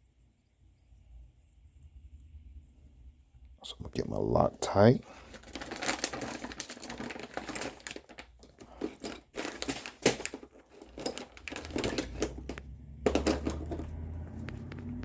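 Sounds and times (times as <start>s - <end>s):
small hard objects clattering: 5.0s - 14.8s.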